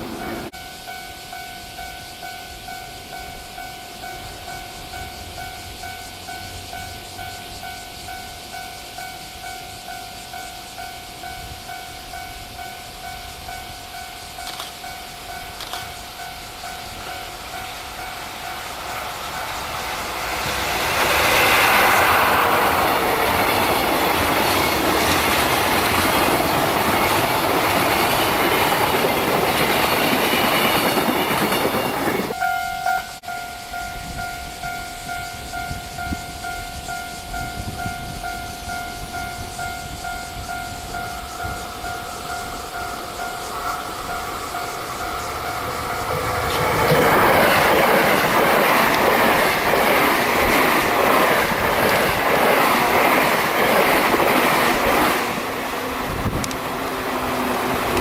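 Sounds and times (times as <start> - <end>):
level-crossing bell ringing: 0.0 - 20.1, 21.4 - 46.5
train passing: 0.0 - 58.0.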